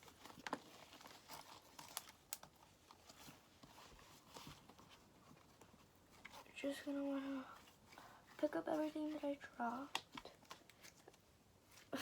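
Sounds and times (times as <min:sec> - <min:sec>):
hands clicking and rustling on floor: 0:07.6 - 0:11.8.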